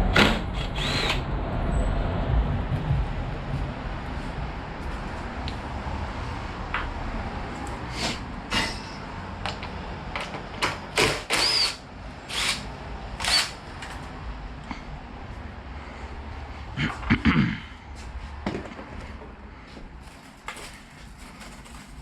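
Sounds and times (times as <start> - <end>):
steady low rumble: 0.0 - 10.1
harsh tool scrapes and rattles: 8.0 - 9.0.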